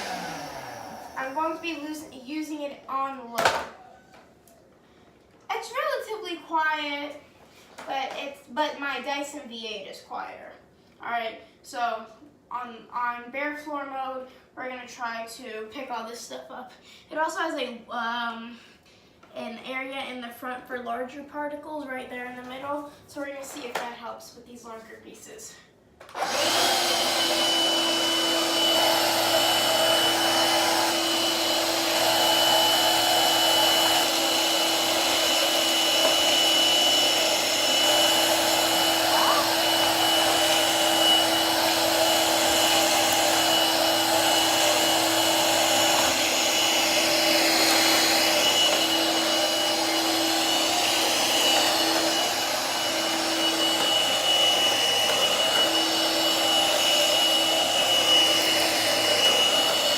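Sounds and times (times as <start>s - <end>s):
stick vacuum running: 0.0s - 2.1s, 26.1s - 59.9s.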